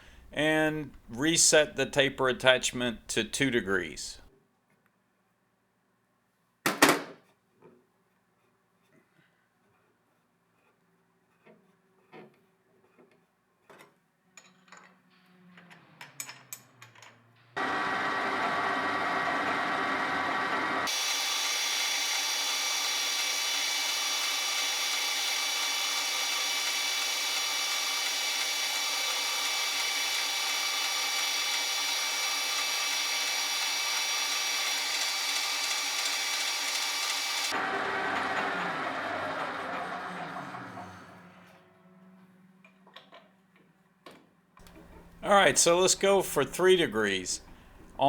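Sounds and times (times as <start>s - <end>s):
metal lathe whining: 17.6s - 41.6s.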